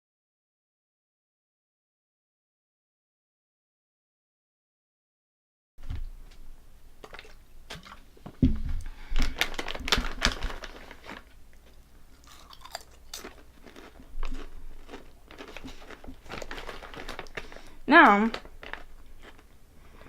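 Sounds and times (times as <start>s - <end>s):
crunching and chewing potato chips: 7.0s - 8.1s, 9.0s - 20.0s.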